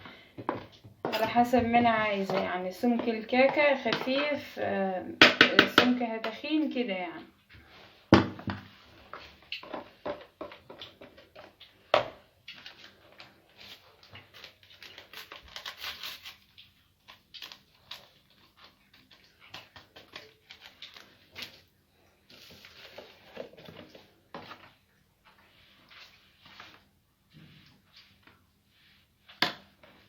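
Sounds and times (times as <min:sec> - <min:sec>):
spoon scraping batter bowl: 0:00.5 - 0:04.6.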